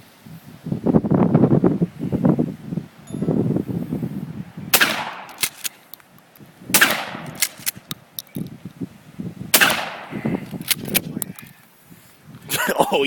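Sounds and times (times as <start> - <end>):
shotgun blasts: 4.7 - 5.7, 6.7 - 7.8, 9.5 - 10.2.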